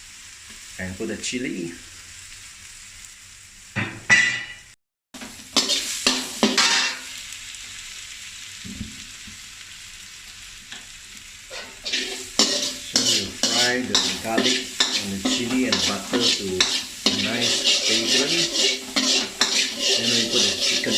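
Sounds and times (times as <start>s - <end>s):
garlic sizzling in butter: 0.0s - 3.8s, 5.2s - 20.9s
stirring strokes in pan: 5.2s - 7.2s, 11.4s - 20.9s.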